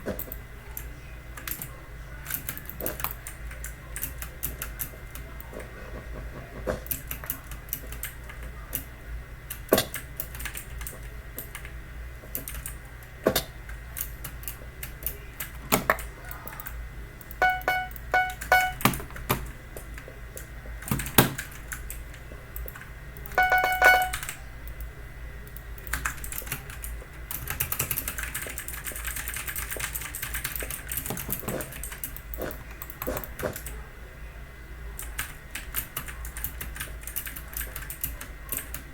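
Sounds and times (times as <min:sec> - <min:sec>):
short pitched beeps: 0:17.4 - 0:18.9, 0:23.4 - 0:24.2.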